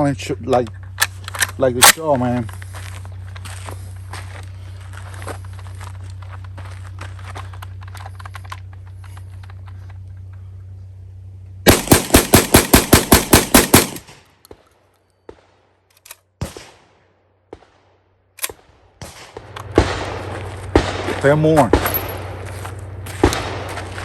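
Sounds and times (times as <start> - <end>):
steady low hum: 0.0 - 24.0
shotgun firing: 11.7 - 14.3, 16.4 - 17.9, 18.5 - 22.4, 23.2 - 23.8.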